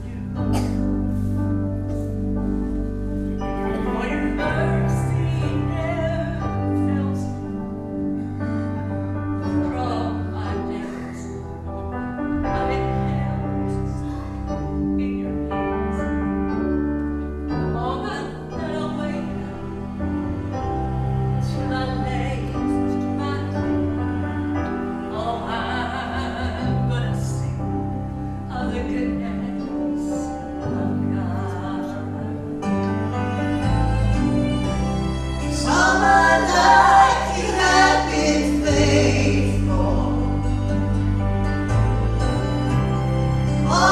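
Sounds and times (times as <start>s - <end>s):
gospel music with bass: 0.0s - 43.9s
people singing: 35.4s - 40.5s, 43.6s - 43.9s.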